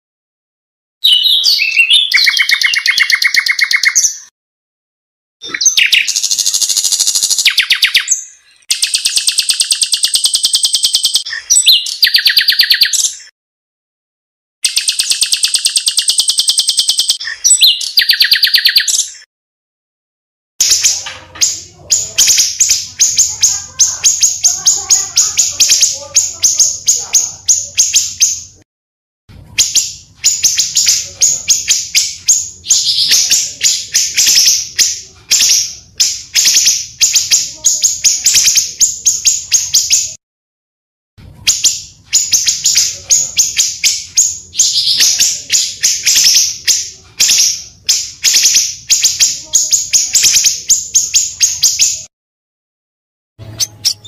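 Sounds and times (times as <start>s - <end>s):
songbird singing rapid high chirps: 1.0s - 4.3s, 5.4s - 13.3s, 14.6s - 19.2s, 20.6s - 28.5s.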